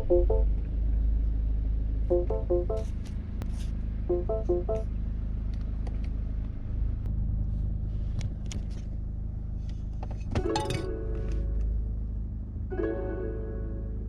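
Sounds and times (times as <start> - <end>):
plucked background music: 0.0 - 0.4, 2.1 - 2.8, 4.1 - 4.8, 12.7 - 14.0
car rumbling: 0.0 - 14.0.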